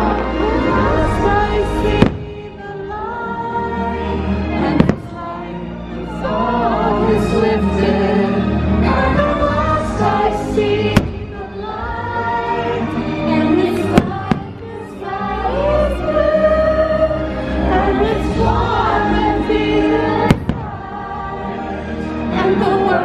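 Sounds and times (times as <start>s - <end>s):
choir singing: 0.0s - 23.0s
orchestral music: 0.0s - 23.0s
firework bangs: 1.5s - 2.5s, 10.9s - 11.4s, 13.9s - 14.6s, 20.2s - 20.9s.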